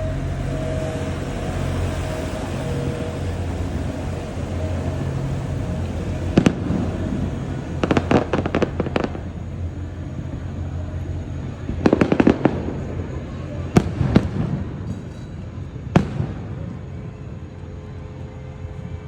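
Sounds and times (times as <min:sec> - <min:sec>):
crackling fireworks bangs: 0:00.0 - 0:17.0
steady low rumble: 0:00.0 - 0:19.0
fireworks bangs: 0:04.6 - 0:09.3, 0:11.7 - 0:16.8.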